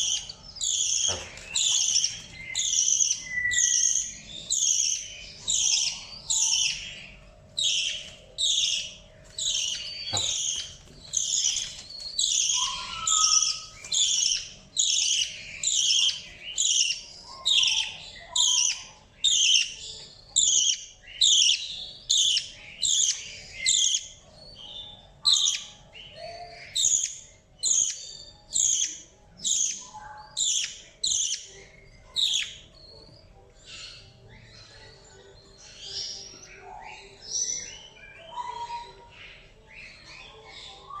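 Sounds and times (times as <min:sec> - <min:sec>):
budgerigar scratchy calls: 0:07.6 - 0:19.8.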